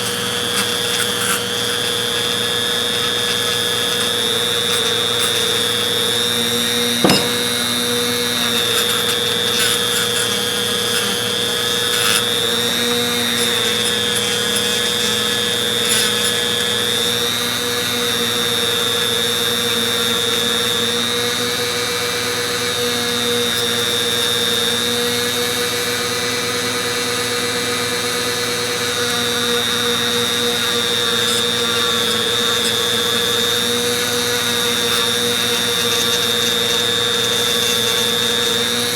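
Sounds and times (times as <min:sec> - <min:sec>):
power tool motor whining: 0:00.0 - 0:38.9
sharp click: 0:07.0 - 0:07.6.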